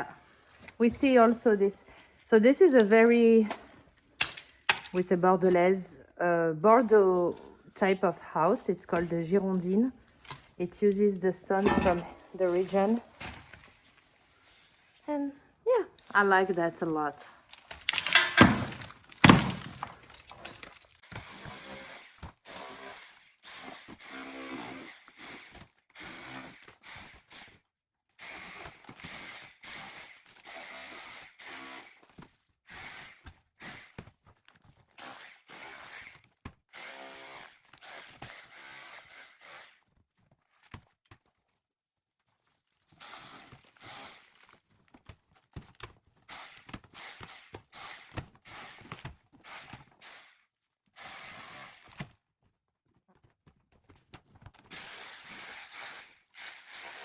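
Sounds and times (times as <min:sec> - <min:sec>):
metal tool scraping plaster: 0:54.7 - 0:57.0.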